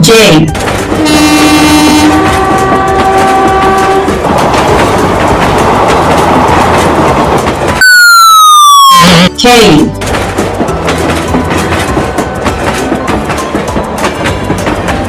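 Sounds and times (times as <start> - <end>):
train rumbling on rails: 0.0 - 9.2, 9.8 - 15.0
train horn: 0.9 - 4.2, 7.8 - 9.2.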